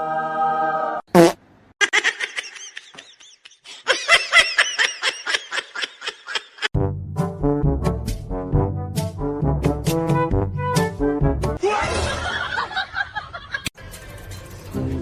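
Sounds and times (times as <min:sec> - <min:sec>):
high-pitched giggling: 0:01.8 - 0:06.7
brass music: 0:06.8 - 0:11.6.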